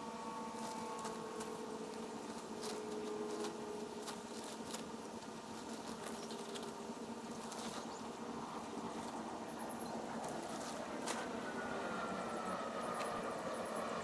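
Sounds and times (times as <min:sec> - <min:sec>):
tent fabric rustling: 0:00.5 - 0:11.4.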